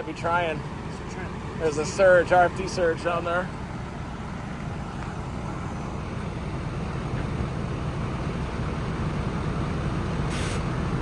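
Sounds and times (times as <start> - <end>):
low rumble and hiss in vehicle: 0.0 - 11.0
short high hiss: 10.3 - 10.7.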